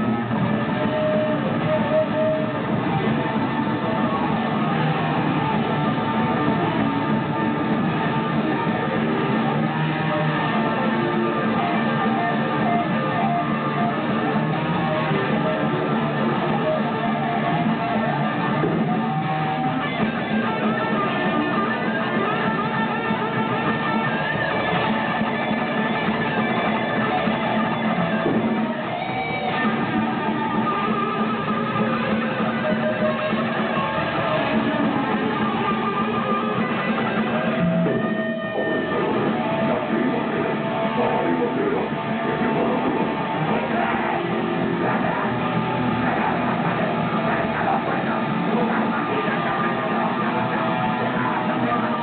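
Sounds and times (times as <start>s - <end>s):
live band playing: 0.0s - 52.0s
strummed electric guitar: 0.0s - 52.0s.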